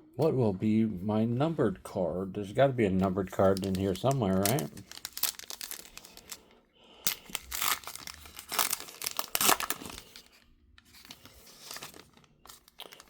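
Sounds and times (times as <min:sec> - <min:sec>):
plastic wrapper tearing and crinkling: 0:03.3 - 0:06.4, 0:07.0 - 0:13.0.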